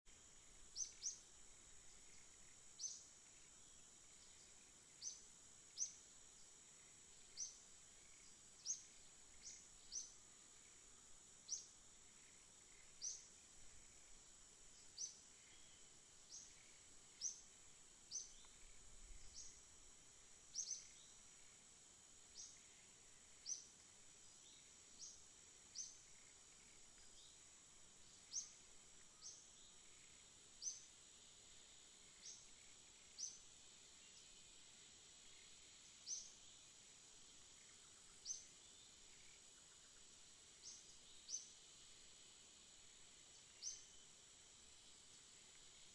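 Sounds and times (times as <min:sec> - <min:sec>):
faint high-pitched hiss: 0:00.0 - 0:45.9
bird chirping: 0:00.6 - 0:01.3, 0:04.1 - 0:10.8, 0:14.7 - 0:19.6, 0:20.5 - 0:21.2.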